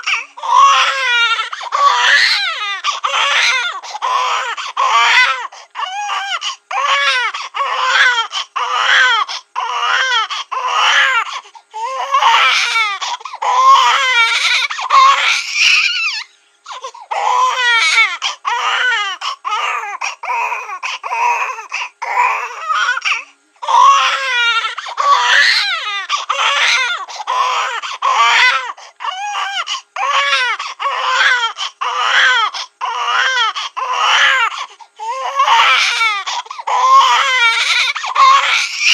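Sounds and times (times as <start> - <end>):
cartoon baby crying: 0.0 - 11.2, 11.9 - 16.3, 17.1 - 34.5, 35.1 - 38.9
catches of breath: 34.5 - 35.2.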